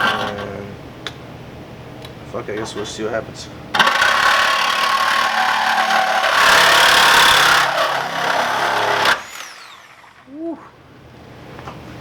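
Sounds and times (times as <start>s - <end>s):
reciprocating saw cutting sheet metal: 3.8s - 10.2s.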